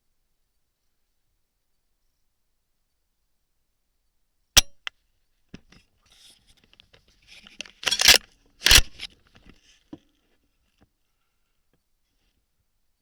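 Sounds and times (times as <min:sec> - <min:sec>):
rifle firing pin click: 0:04.6 - 0:04.9, 0:07.8 - 0:09.1
rifle scraping clatters: 0:05.6 - 0:09.8
small click: 0:07.5 - 0:09.5.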